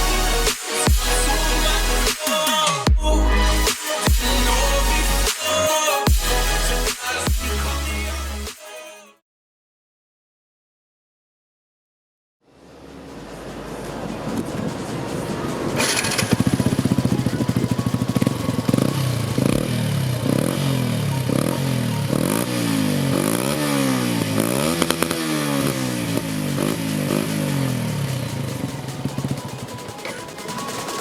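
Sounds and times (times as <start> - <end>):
motorcycle engine revving: 12.6 - 31.0.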